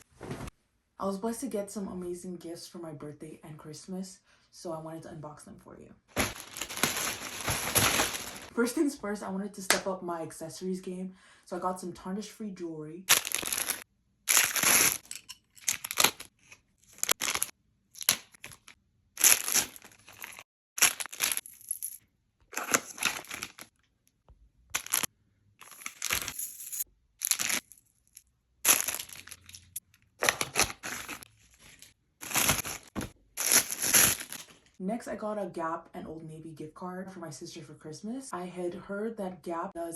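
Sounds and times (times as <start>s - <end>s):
plastic packaging tearing and crinkling: 6.2s - 8.5s, 13.1s - 21.4s, 22.6s - 23.7s, 24.8s - 26.4s, 27.2s - 27.8s, 28.6s - 34.8s.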